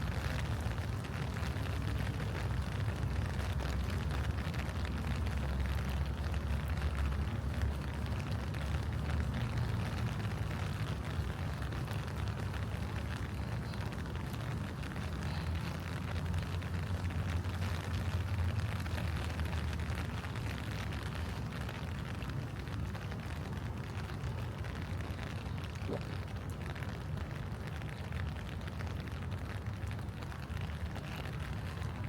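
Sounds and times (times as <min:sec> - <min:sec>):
rain pattering on leaves: 0:00.0 - 0:32.0.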